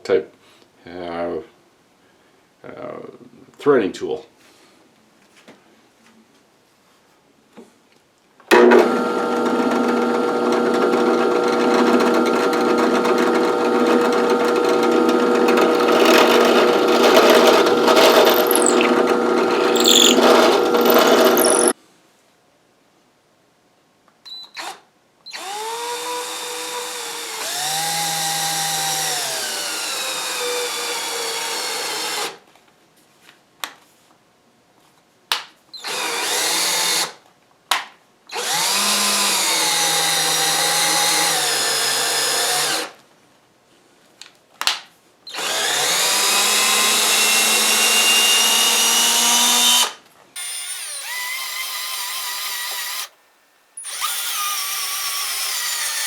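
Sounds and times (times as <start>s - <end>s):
electric drill whining: 8.6s - 21.8s, 25.4s - 32.2s, 38.4s - 42.9s, 45.4s - 53.2s, 53.8s - 56.0s.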